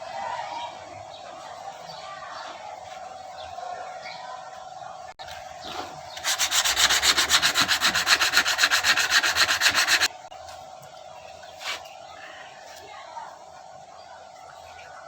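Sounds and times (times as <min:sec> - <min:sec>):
rapid sanding strokes: 0:06.2 - 0:10.3.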